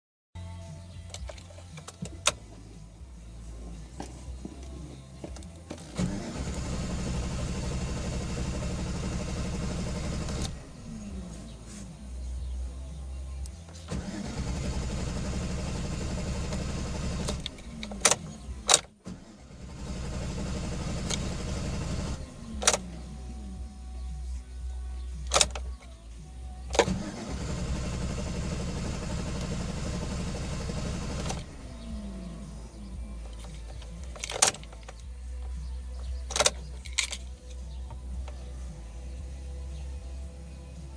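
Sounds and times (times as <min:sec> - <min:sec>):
engine cranking on starter: 0:05.7 - 0:10.9, 0:13.7 - 0:23.3, 0:26.7 - 0:35.0
starter click: 0:25.3 - 0:25.9.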